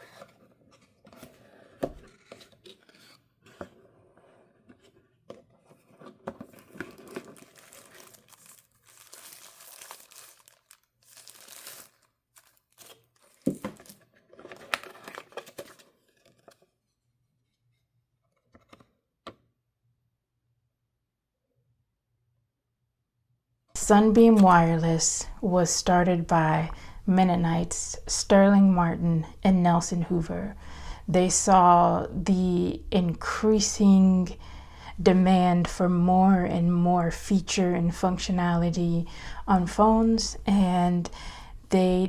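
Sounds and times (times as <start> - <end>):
packaging crinkling and tearing: 6.4 - 16.5.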